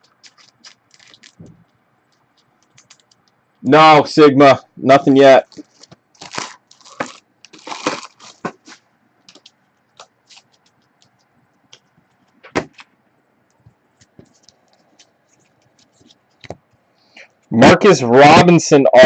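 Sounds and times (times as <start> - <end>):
card pack wrappers crinkling: 0.0 - 1.4, 2.1 - 3.3, 5.4 - 11.3, 14.0 - 16.6
cards being handled: 0.0 - 1.5, 2.2 - 3.2, 5.5 - 12.9, 13.6 - 16.8.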